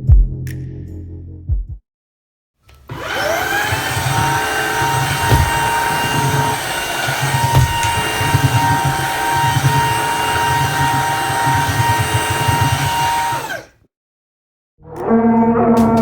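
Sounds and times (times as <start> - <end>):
vacuum cleaner motor whine: 2.7 - 13.7.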